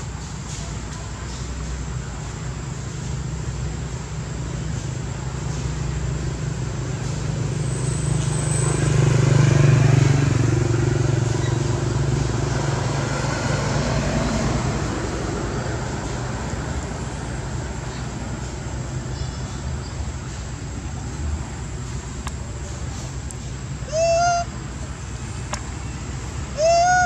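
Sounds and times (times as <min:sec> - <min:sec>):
vehicle engine passing by: 0:05.5 - 0:20.4.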